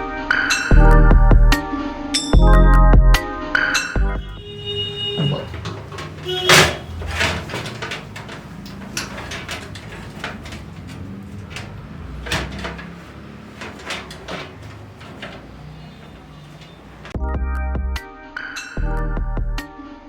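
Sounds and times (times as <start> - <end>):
music: 0.0 - 5.3, 17.1 - 20.0
clicks and knocks of computer parts: 4.2 - 17.2.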